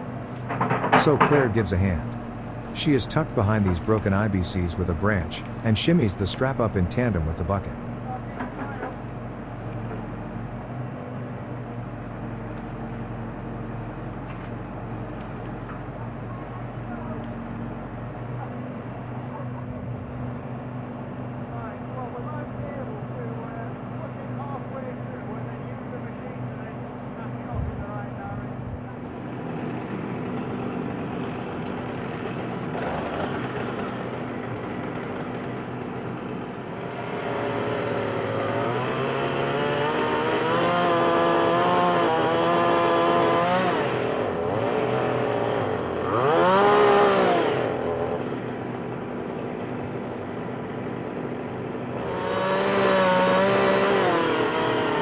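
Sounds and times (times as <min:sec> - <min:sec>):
backhoe diesel engine revving: 0:00.0 - 0:11.2, 0:29.5 - 0:50.9, 0:51.8 - 0:55.0.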